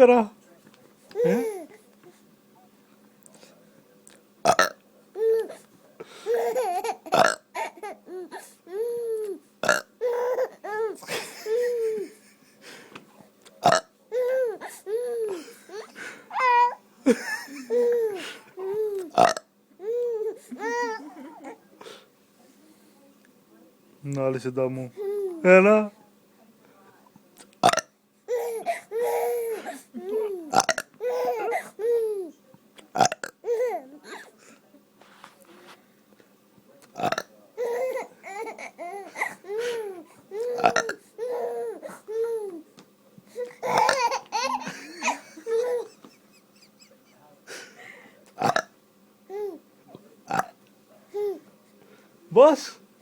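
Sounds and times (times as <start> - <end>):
person making fake burps: 4.5 - 4.8, 7.1 - 7.5, 9.6 - 9.9, 13.6 - 13.9, 19.2 - 19.5, 27.6 - 27.9, 30.5 - 31.0, 33.0 - 33.4, 37.0 - 37.3, 40.6 - 41.0, 48.4 - 48.7, 50.3 - 50.6
baby laughing: 6.3 - 9.4, 10.0 - 12.1, 14.1 - 16.8, 17.7 - 19.2, 19.8 - 21.6, 28.3 - 32.4, 33.4 - 33.9, 37.6 - 42.6, 43.4 - 46.9.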